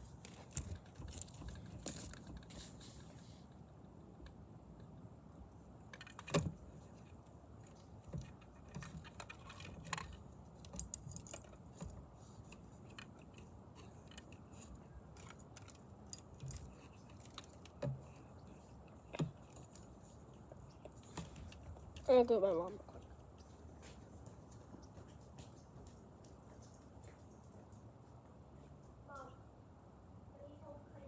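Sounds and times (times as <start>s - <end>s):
objects clicking and tapping: 5.9s - 20.0s.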